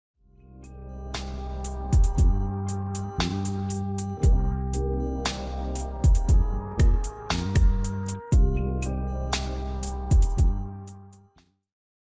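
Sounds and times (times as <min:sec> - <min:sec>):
held bass note: 0:00.6 - 0:10.8.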